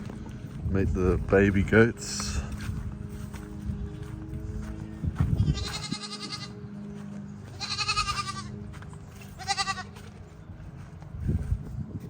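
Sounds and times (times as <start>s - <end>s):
baby goats bleating: 5.4s - 6.6s, 7.5s - 8.6s, 9.3s - 10.1s.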